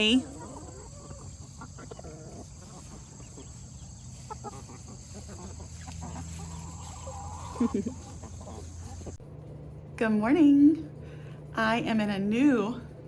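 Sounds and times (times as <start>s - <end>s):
hens clucking: 0.0s - 9.2s.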